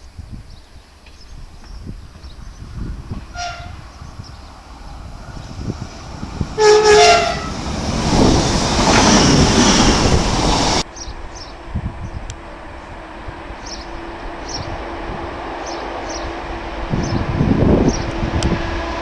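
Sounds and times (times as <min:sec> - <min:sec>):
train wheels rushing: 0:02.1 - 0:10.9
train horn blast: 0:03.3 - 0:04.4, 0:05.0 - 0:10.8.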